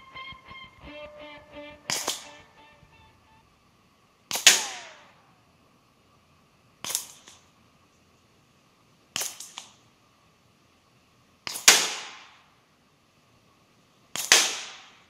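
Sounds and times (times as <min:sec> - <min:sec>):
guitar music: 0:00.0 - 0:03.4
ricochet whine: 0:00.0 - 0:03.5.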